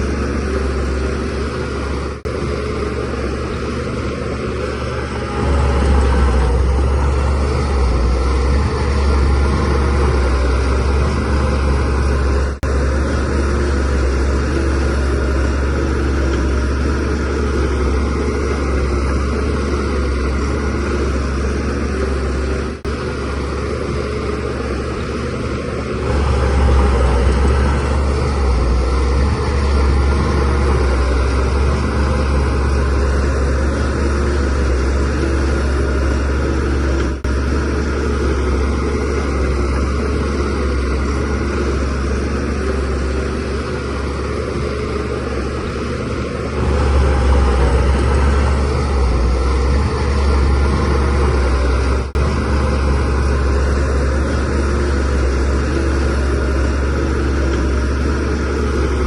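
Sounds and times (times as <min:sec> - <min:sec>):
bulldozer diesel engine droning: 0:00.0 - 0:59.0.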